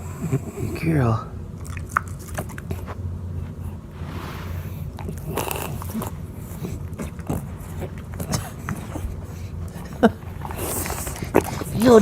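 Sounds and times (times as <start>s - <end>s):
steady low hum: 0.0s - 12.0s
dog crunching snacks: 1.5s - 3.0s.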